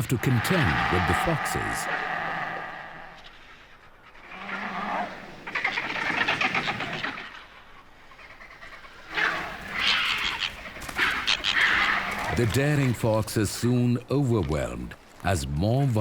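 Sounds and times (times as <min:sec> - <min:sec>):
vultures hissing and grunting: 0:00.2 - 0:03.4, 0:04.2 - 0:12.9.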